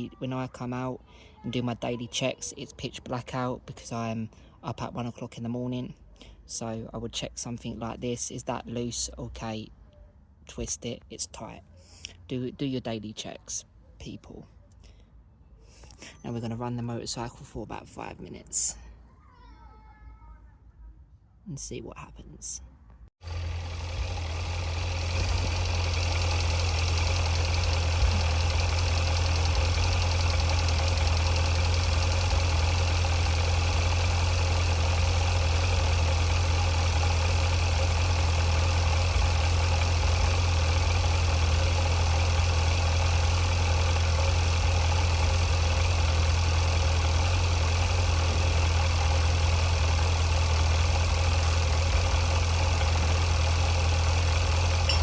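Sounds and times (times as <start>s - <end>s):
motorcycle engine idling: 23.2s - 55.0s.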